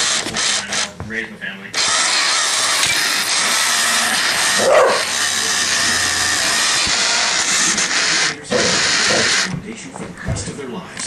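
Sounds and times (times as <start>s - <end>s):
loud whirring noise: 1.7s - 9.8s
dog barking: 4.6s - 5.1s.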